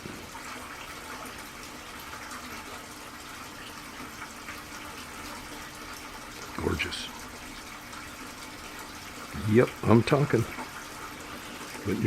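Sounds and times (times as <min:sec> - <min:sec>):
running water rushing: 0:00.0 - 0:12.0.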